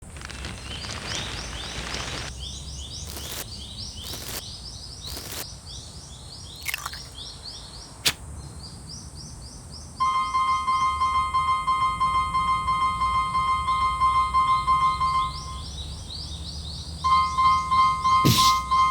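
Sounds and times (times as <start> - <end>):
falling glide: 0.0 - 2.3
sharp crack: 0.0 - 2.4, 8.0 - 8.2
high bird chirps: 0.4 - 5.4.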